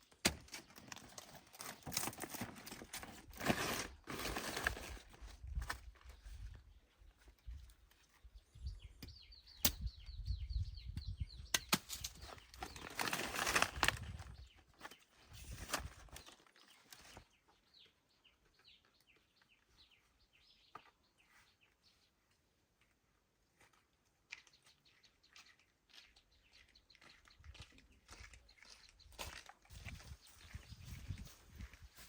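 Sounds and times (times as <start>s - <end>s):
banana plants rustling: 0.2s - 6.5s, 12.1s - 17.3s
small bird chirping trills: 6.0s - 22.5s, 24.3s - 32.0s.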